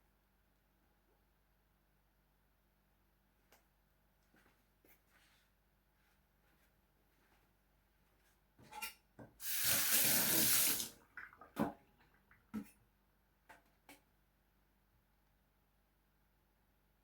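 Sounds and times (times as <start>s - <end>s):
kitchen tap running into sink: 9.4s - 11.8s.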